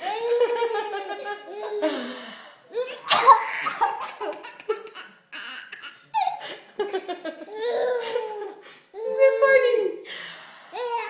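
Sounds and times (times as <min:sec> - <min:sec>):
baby laughing: 0:00.0 - 0:02.0, 0:02.8 - 0:09.3
woman coughing: 0:03.1 - 0:04.6.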